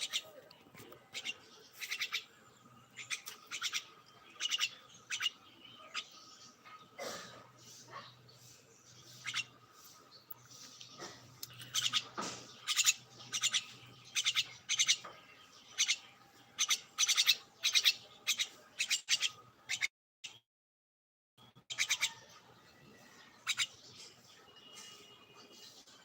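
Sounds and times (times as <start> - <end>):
birds chirping: 0.0 - 20.4, 21.4 - 26.0.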